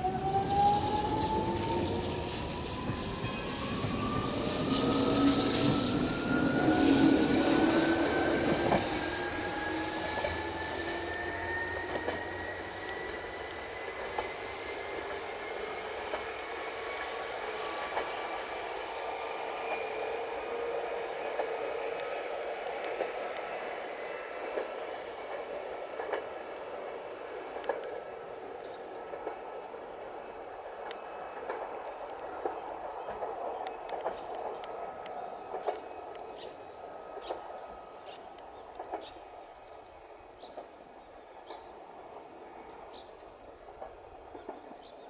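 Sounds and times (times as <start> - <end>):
electric train motor whine: 0.0 - 29.6
wheels clicking over rail joints: 24.4 - 42.3.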